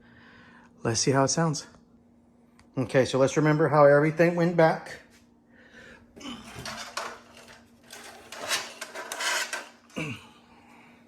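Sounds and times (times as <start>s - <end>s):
metal dryer parts clattering: 6.2s - 10.2s.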